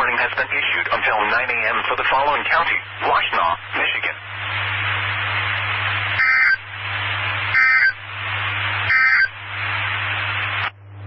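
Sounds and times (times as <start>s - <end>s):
radio hiss: 0.0s - 10.8s
digital data tone bursts: 6.2s - 6.6s, 7.5s - 8.0s, 8.9s - 9.4s.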